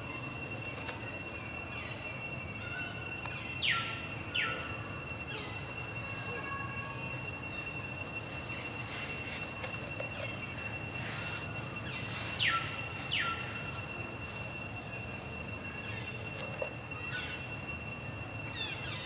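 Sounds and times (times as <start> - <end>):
insects droning: 0.0 - 19.0
low background hum: 0.0 - 19.0
short high falling calls: 1.7 - 16.4.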